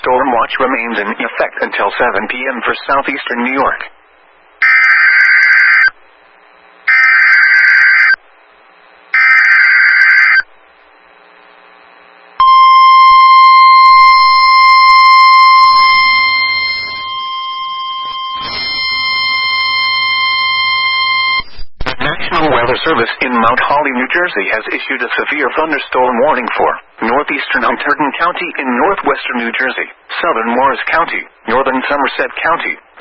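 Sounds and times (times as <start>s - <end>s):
steady high alarm tone: 4.6s - 6.0s, 6.8s - 8.2s, 9.1s - 10.5s, 12.4s - 21.4s
screechy digital data bursts: 6.9s - 8.2s, 9.1s - 10.4s, 13.8s - 21.2s.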